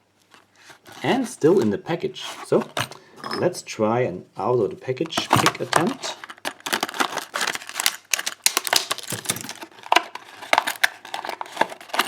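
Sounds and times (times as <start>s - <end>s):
plastic packaging tearing: 0.3s - 2.6s, 5.0s - 12.0s.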